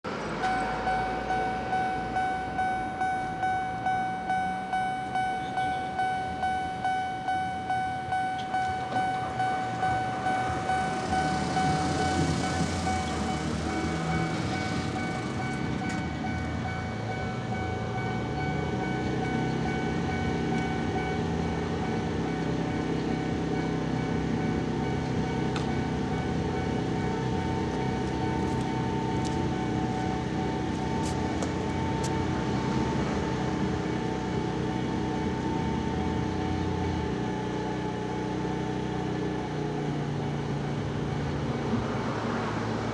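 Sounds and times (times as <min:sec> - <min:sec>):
level crossing bell ringing: 0:00.4 - 0:12.8
train rumbling past: 0:08.5 - 0:37.3.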